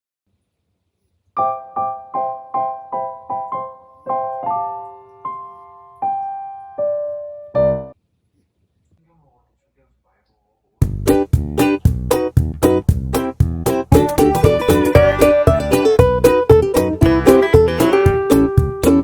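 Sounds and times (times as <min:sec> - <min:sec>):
plucked keyboard tune: 0:01.4 - 0:08.0, 0:10.8 - 0:19.0.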